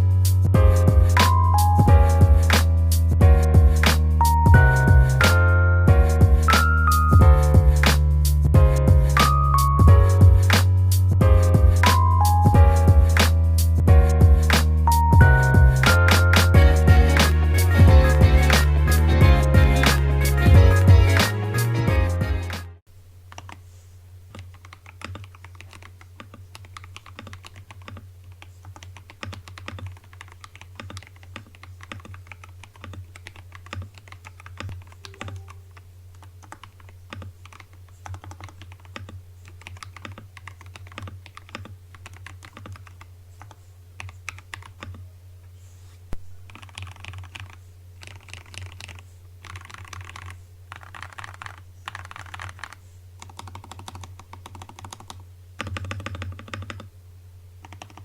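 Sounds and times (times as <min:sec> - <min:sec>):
mechanical keyboard typing: 0:23.3 - 0:23.6, 0:24.3 - 0:45.0, 0:46.5 - 0:56.9, 0:57.6 - 0:58.0.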